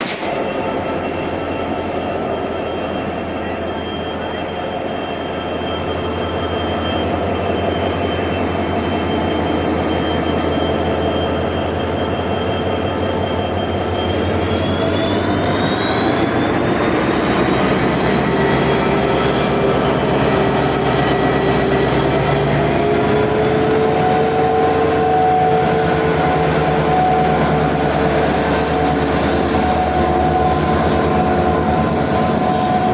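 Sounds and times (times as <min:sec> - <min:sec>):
short hiss: 0:00.0 - 0:00.4
train rumble with whining tones: 0:00.0 - 0:32.9.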